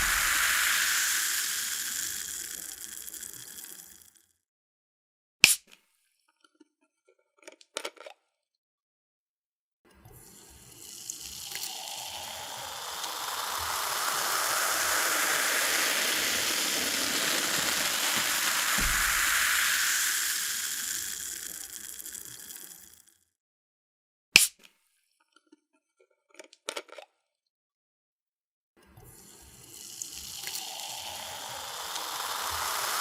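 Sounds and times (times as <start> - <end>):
cola pouring and fizzing: 0.0 - 4.1, 10.1 - 23.1, 29.1 - 33.0.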